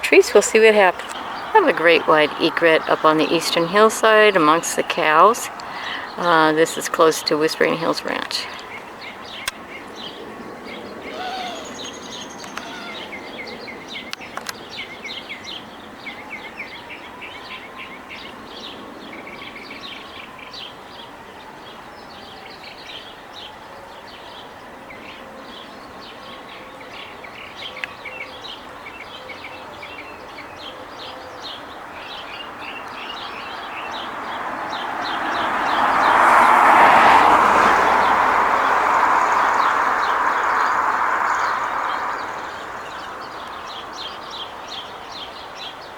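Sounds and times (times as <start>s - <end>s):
small birds chirping: 0.0s - 45.9s
passing vehicle rushing: 31.8s - 45.7s.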